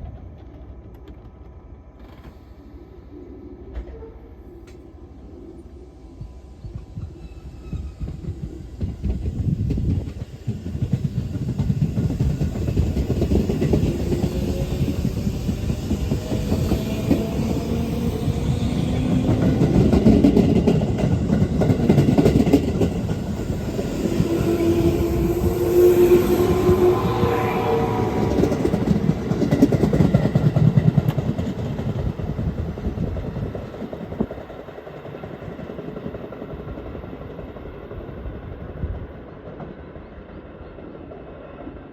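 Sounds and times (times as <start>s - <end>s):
electric train running: 7.2s - 37.0s
whining tones rising in pitch: 23.0s - 30.1s.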